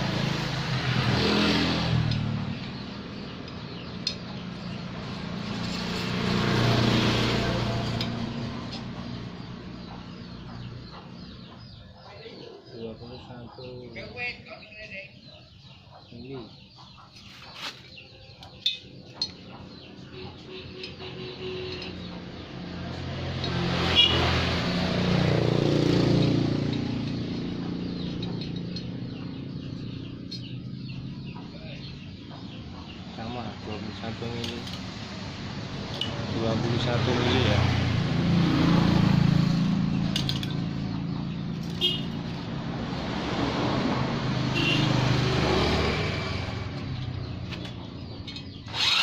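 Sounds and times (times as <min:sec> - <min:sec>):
vehicle engine running: 0:19.8 - 0:49.0
sharp metallic clink: 0:20.7 - 0:22.2, 0:40.0 - 0:40.6.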